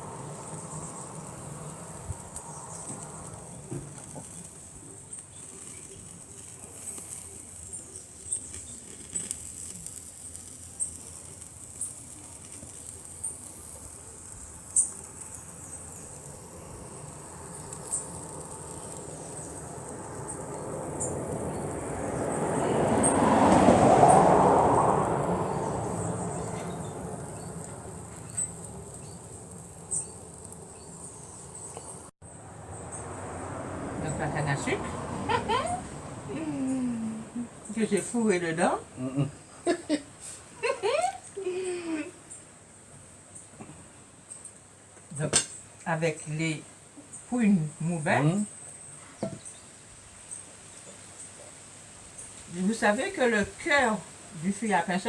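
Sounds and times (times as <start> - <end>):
insects chirring: 0.0 - 33.6
broad rising noise: 14.0 - 37.7.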